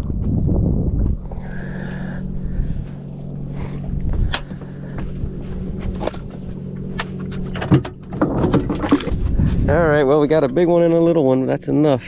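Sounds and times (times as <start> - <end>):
boat engine hum: 0.0 - 12.0
sharp clicks and knocks: 6.0 - 9.2.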